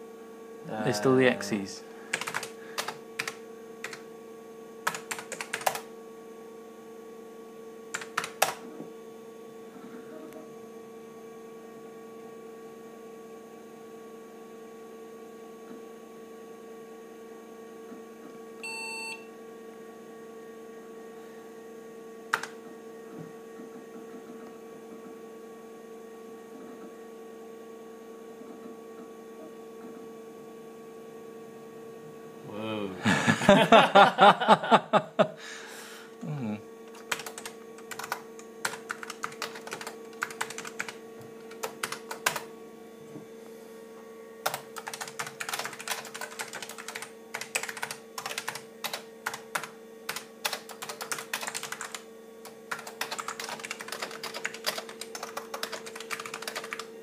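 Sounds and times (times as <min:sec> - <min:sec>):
computer hum: 0:00.0 - 0:11.7, 0:20.8 - 0:25.1, 0:31.0 - 0:57.0.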